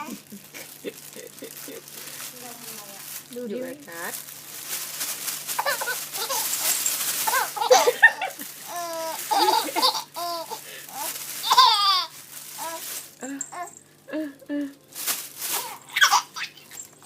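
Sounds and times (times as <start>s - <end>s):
plastic bag crinkling: 0.0s - 14.0s, 14.7s - 17.0s
baby laughing: 5.6s - 12.8s, 15.6s - 16.8s.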